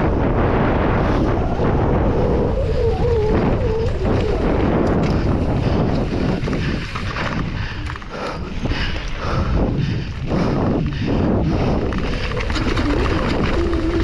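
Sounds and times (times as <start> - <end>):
mountain bike rattle and tyre noise: 0.0 - 14.0
wind buffeting microphone: 0.0 - 14.0
wavering tone: 1.3 - 5.3.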